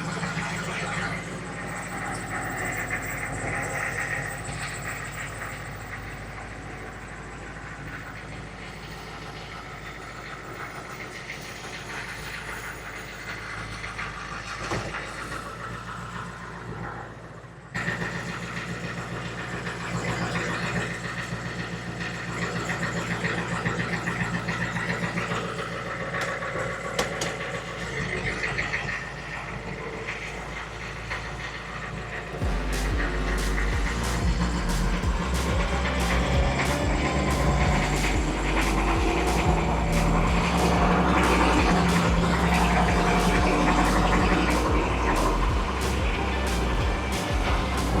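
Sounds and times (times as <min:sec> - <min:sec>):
diesel engine running: 0:00.0 - 0:48.0
drivetrain noise: 0:24.9 - 0:48.0.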